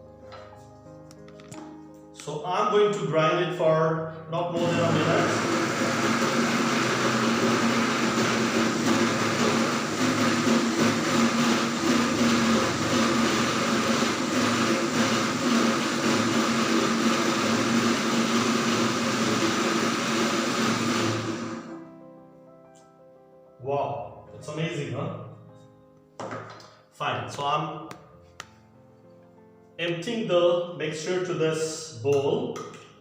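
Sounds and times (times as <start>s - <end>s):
mixer grinder blending: 4.6s - 21.8s.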